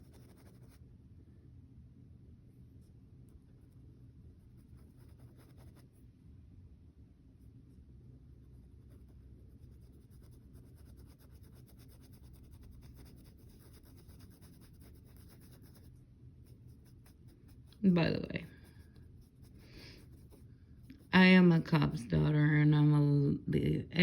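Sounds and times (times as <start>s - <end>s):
tool scratching on fabric: 0.0s - 0.8s, 3.3s - 6.0s, 8.3s - 21.4s
low steady hum: 0.0s - 24.0s.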